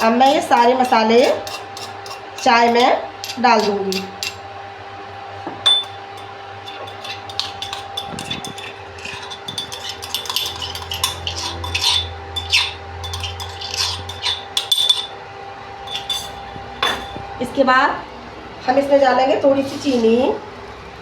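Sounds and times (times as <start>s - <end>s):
spoon clinking and scraping cookware: 0.0s - 4.4s, 5.7s - 15.2s, 15.9s - 17.2s
electric hum of cooktop: 0.0s - 21.0s.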